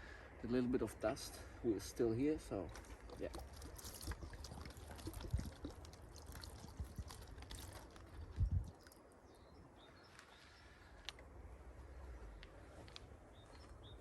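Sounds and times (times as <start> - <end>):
water sloshing in a drum: 2.6 - 8.9.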